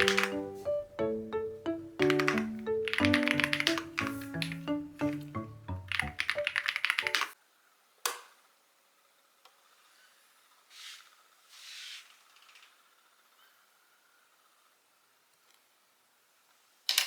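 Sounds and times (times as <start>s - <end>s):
computer keyboard typing: 0.0s - 0.6s, 2.0s - 7.4s
background music: 0.0s - 7.4s.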